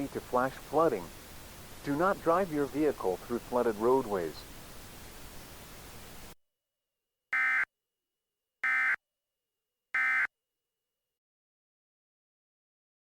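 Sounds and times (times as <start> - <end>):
background hiss: 0.0 - 6.4.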